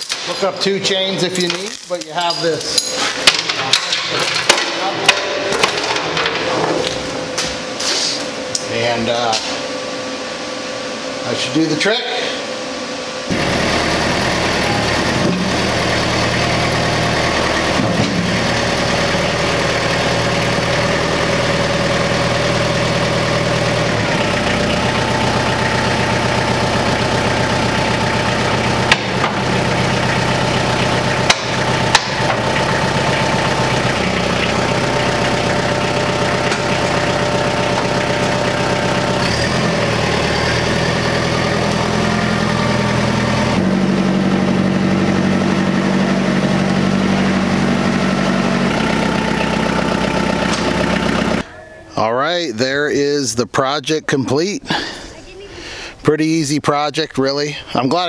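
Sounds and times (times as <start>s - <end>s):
skid steer engine idling: 13.2s - 55.8s.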